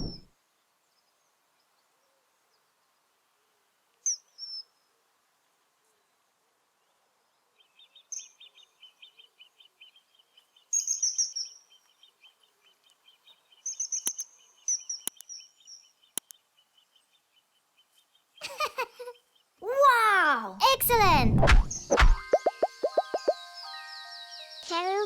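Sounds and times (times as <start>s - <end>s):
sharp clicks: 15.1s - 15.3s, 20.8s - 23.4s
faint fast chirping: 15.1s - 15.4s, 20.9s - 23.6s.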